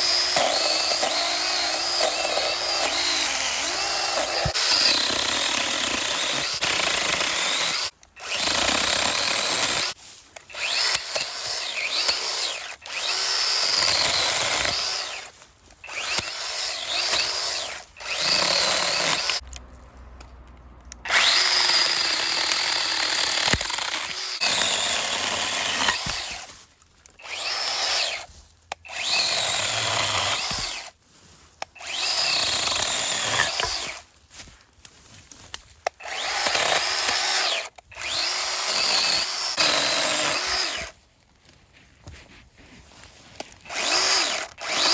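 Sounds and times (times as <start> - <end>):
mini chainsaw cutting brush: 0.0 - 19.4, 21.1 - 31.0, 31.6 - 34.1, 35.8 - 41.0, 42.1 - 44.9.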